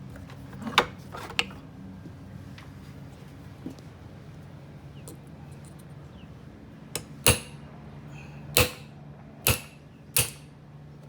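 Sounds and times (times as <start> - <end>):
steady low hum: 1.5 - 11.0
hammer striking steel punch: 7.0 - 7.6, 8.5 - 10.5.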